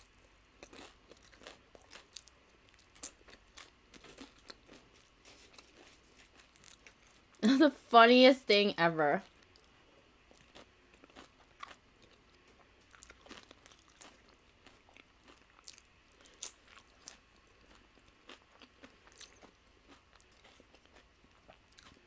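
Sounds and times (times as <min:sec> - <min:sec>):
crunching of tortilla chips: 0:00.0 - 0:07.4, 0:09.2 - 0:22.0.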